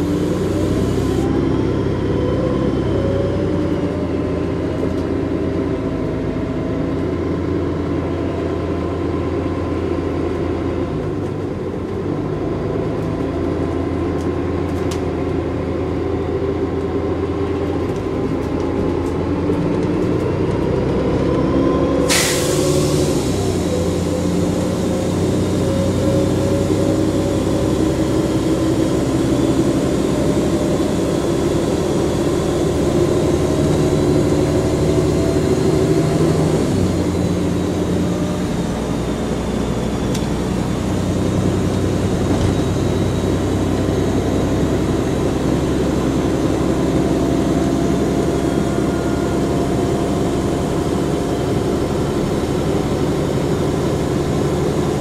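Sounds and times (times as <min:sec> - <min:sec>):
bus diesel engine under load: 0:00.0 - 0:55.0.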